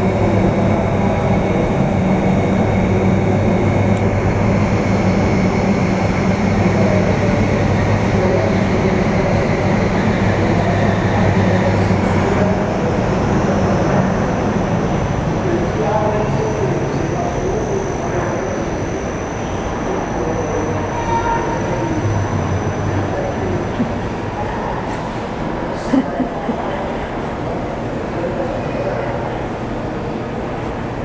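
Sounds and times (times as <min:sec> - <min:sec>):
blower hum: 0:00.0 - 0:31.0.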